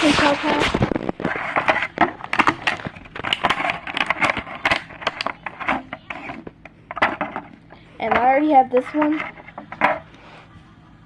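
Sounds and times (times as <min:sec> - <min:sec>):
plastic packaging crinkling: 0:00.0 - 0:06.3.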